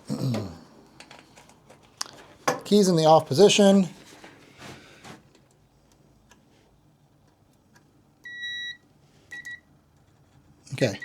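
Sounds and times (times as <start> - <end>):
multimeter beeping: 8.2 - 9.6.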